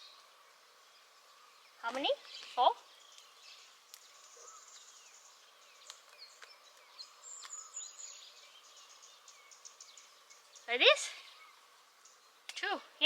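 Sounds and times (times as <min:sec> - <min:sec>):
faint bird chirps: 0:00.0 - 0:13.0
faint clicks: 0:03.9 - 0:04.1, 0:05.8 - 0:07.6.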